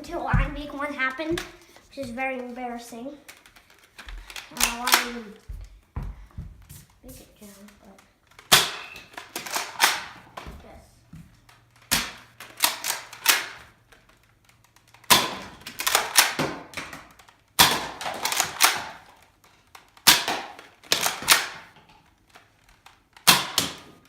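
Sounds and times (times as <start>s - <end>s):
toy blaster clacking and snapping: 3.2s - 5.8s, 7.7s - 10.4s, 11.4s - 24.0s.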